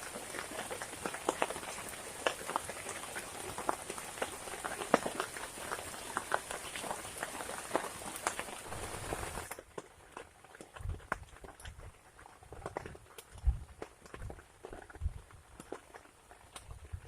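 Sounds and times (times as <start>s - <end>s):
sharp raindrop hits: 0.0s - 9.6s
heavy rain in forest: 0.0s - 17.0s.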